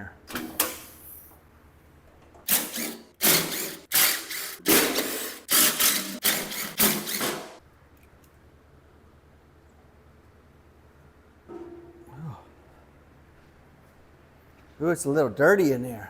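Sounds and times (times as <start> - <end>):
power tool bursts: 2.5 - 7.6.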